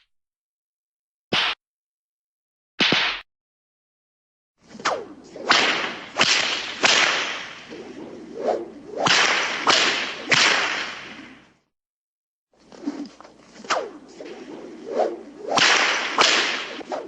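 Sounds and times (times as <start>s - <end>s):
whip cracks: 1.3s - 1.6s, 2.8s - 3.2s, 4.6s - 11.6s, 12.8s - 17.0s
sweeping swish: 4.6s - 11.6s, 12.6s - 17.0s.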